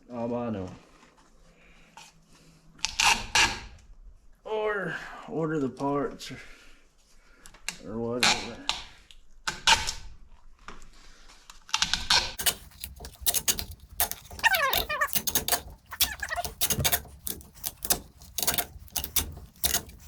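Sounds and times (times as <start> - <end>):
tape squeals: 12.4 - 20.0.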